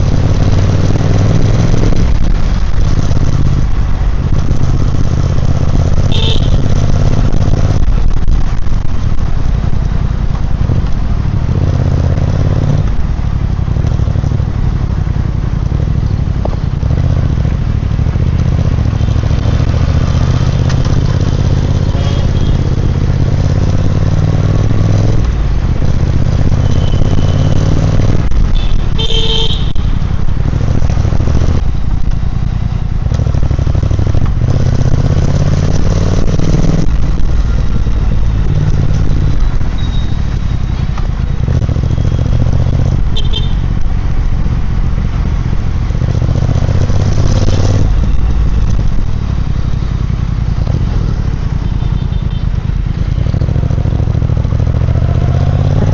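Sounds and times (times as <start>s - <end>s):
motorcycle engine running: 0.0s - 55.9s.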